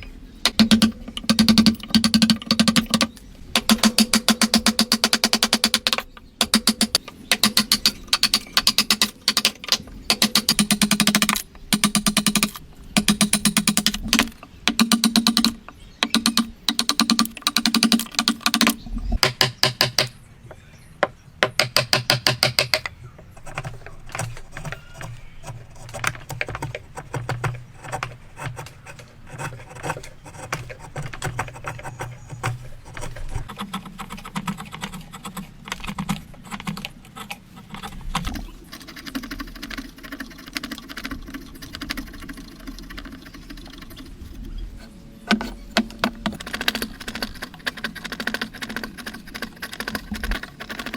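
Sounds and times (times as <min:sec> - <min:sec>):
hand tool clicking strokes on wood: 0:45.3 - 0:50.9.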